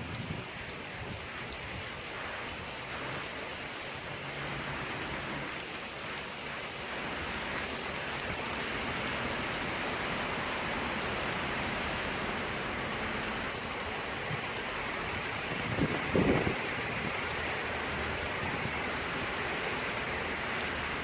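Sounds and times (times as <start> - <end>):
strong wind: 0.0 - 2.7, 13.0 - 21.0
heavy rain: 0.0 - 21.0.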